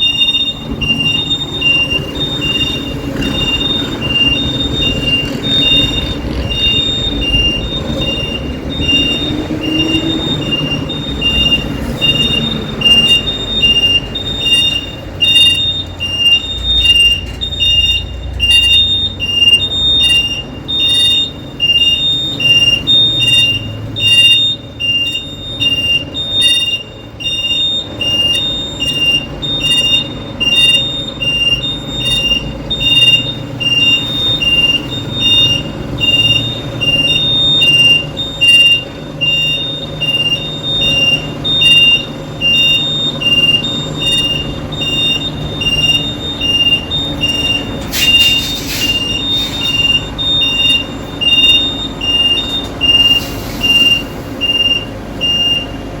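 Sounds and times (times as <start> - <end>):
diesel engine running: 0.0 - 56.0
two-tone reversing siren: 0.0 - 56.0
air hiss: 47.9 - 49.6.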